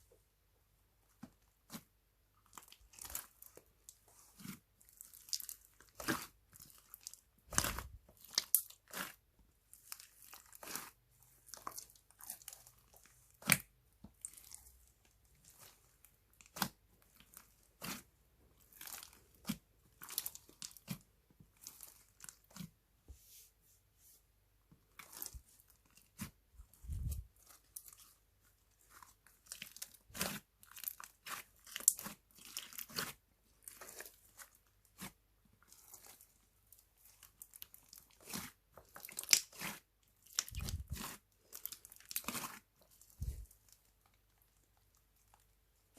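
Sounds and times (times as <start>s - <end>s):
slime squished by hand: 1.6s - 9.2s, 9.8s - 22.7s, 37.0s - 45.9s.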